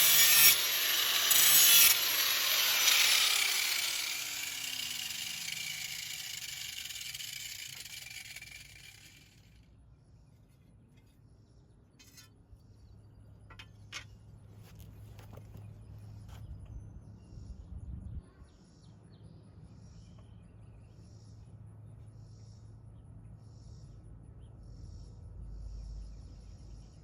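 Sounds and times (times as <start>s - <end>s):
grinder grinding steel blade: 0.0s - 9.5s
motor winding down whine: 0.0s - 9.5s.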